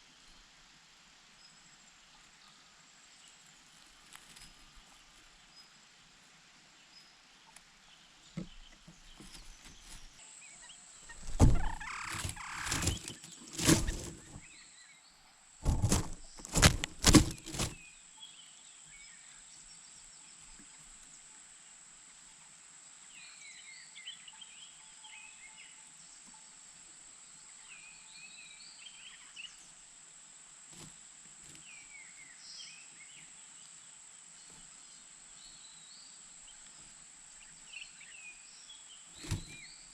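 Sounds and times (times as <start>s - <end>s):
loud thumps and rustles: 11.1s - 14.4s, 15.6s - 17.8s, 39.2s - 39.6s.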